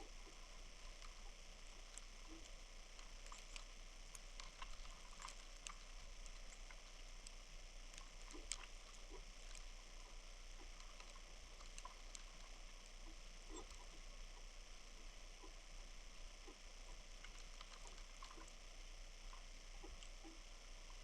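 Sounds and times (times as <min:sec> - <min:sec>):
light ticks and patter: 0:00.0 - 0:21.0.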